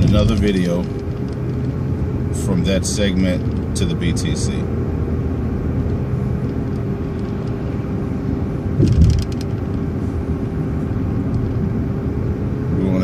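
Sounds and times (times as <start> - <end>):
bus engine and road rumble: 0.0 - 13.0
constant whine: 0.0 - 13.0
rattling knock: 8.8 - 9.4.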